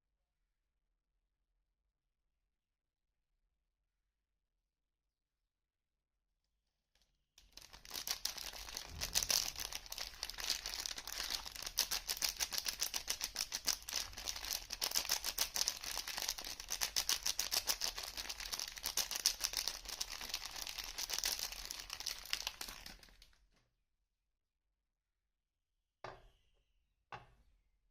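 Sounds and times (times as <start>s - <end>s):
packaging crinkling and tearing: 7.4s - 23.4s.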